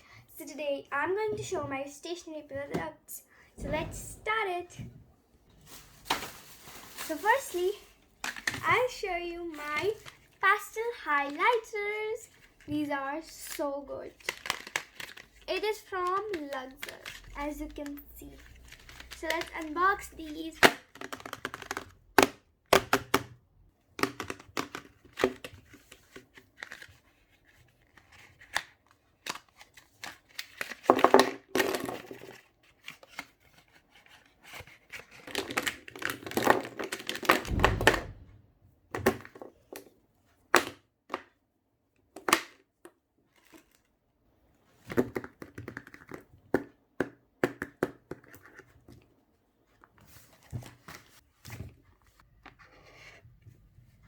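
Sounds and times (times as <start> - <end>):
dull thump: 3.6 - 5.1, 37.5 - 38.6
packaging rustling: 5.6 - 8.5
packaging clicks and knocks: 14.2 - 15.4.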